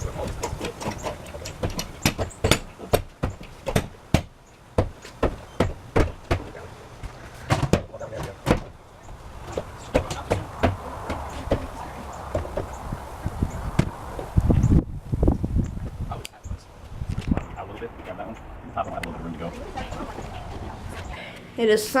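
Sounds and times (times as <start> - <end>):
hammer knocking on board: 0.2 - 6.5, 9.5 - 11.7.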